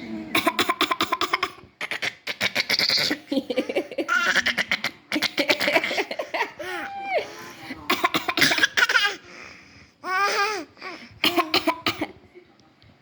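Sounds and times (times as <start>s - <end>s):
small child giggling: 1.8s - 7.2s.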